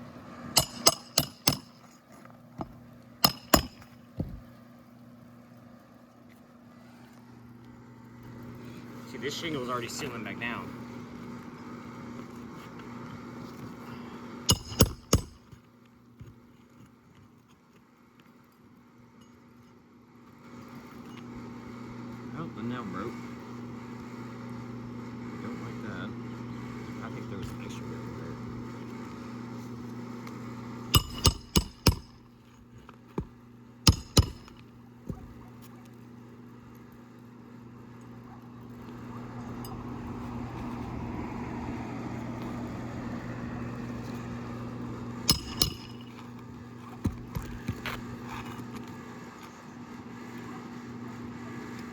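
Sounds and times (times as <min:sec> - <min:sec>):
low steady hum: 0:00.0 - 0:16.3, 0:18.9 - 0:50.0
nail being hammered into shingle: 0:00.6 - 0:01.8, 0:03.2 - 0:04.4, 0:14.5 - 0:15.6, 0:31.0 - 0:32.2, 0:33.2 - 0:35.3, 0:45.2 - 0:46.1.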